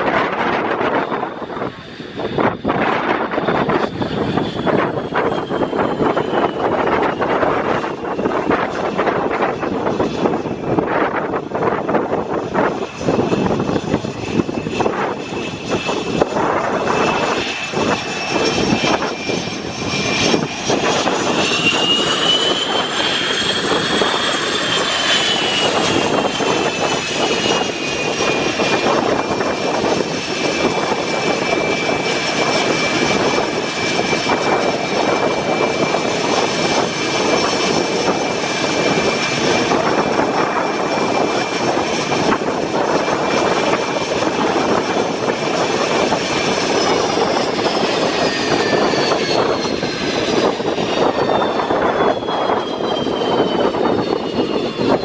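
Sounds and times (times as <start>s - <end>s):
high jet whine: 0.0s - 55.0s
jet engines roaring: 0.0s - 55.0s.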